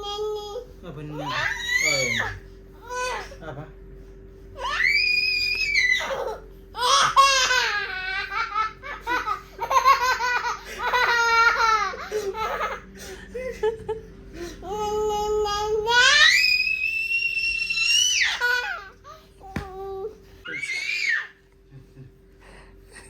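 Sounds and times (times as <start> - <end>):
child squealing: 4.6 - 6.4
child laughing: 6.0 - 12.8.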